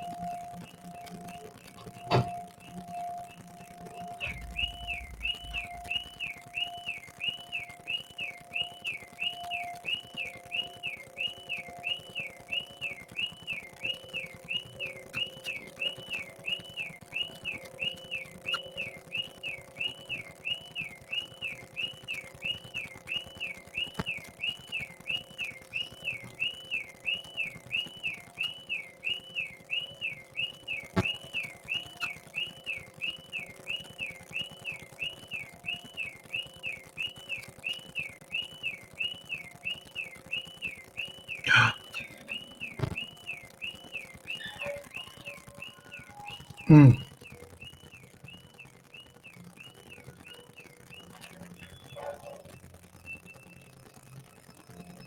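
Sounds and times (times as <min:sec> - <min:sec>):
faint low hum: 0:00.0 - 0:10.8
high warbling whistle tone: 0:00.0 - 0:22.6, 0:23.2 - 0:47.0.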